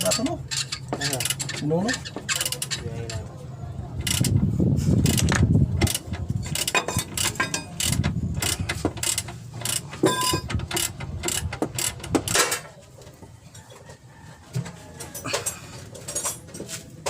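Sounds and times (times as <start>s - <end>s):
metal tools clicking and clinking: 0.0s - 3.3s, 4.0s - 4.4s, 5.0s - 12.7s, 15.0s - 16.7s.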